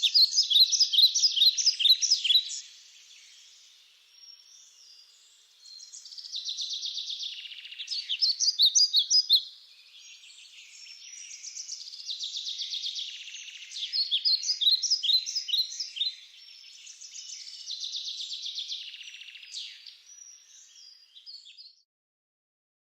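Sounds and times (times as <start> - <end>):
sharp bird chirps: 0.0 - 2.7
bird song with buzzy trill: 0.0 - 21.8.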